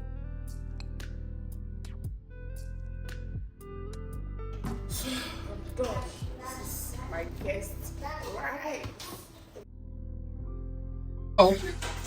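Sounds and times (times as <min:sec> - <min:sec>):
steady low bass: 0:00.0 - 0:07.7.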